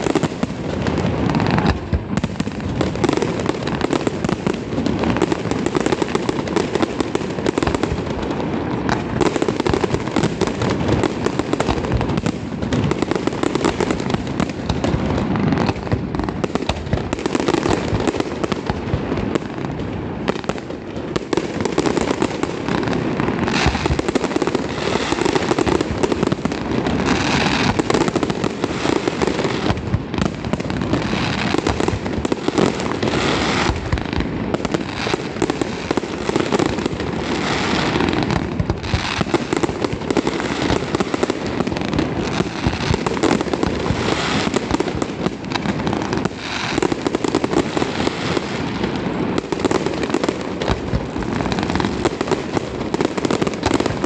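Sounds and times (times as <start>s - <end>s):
fireworks cracking and popping: 0.0s - 54.0s.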